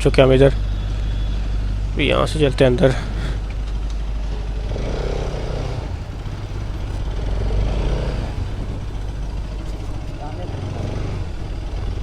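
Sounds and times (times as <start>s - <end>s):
road and wind noise: 0.0s - 12.0s
motorcycle engine running: 3.1s - 12.0s.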